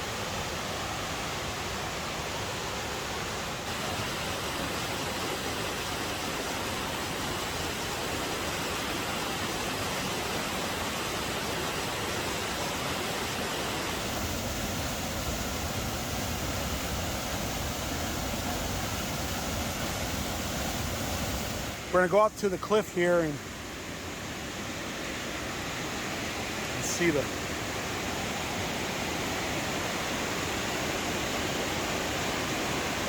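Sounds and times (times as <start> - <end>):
waterfall rushing: 0.0 - 33.0.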